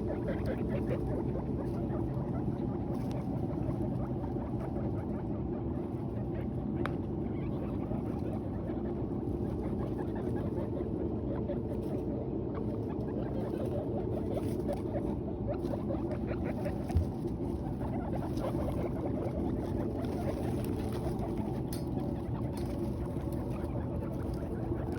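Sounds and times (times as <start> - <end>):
guinea pigs chewing hay: 0.0 - 24.9
steady low hum: 0.0 - 24.9.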